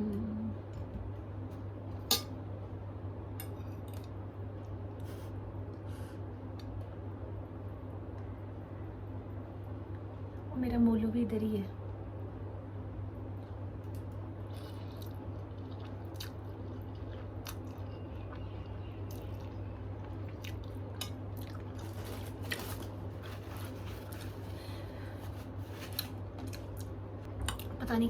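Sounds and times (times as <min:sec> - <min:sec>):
steady low hum: 0:00.0 - 0:28.0
chewing with wet smacks: 0:13.4 - 0:21.9.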